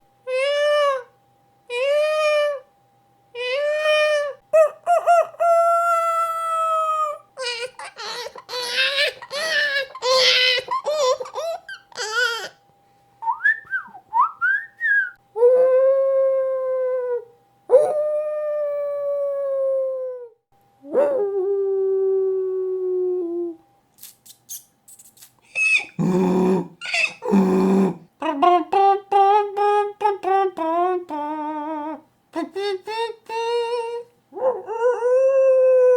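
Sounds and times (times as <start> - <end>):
man imitating animal sounds: 0.3 - 1.1, 1.7 - 2.7, 3.4 - 10.4, 25.6 - 35.6.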